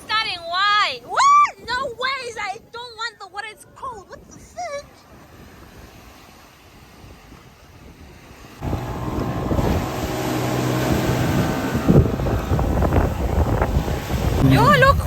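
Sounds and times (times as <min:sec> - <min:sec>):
motorboat engine running: 0:08.6 - 0:15.0.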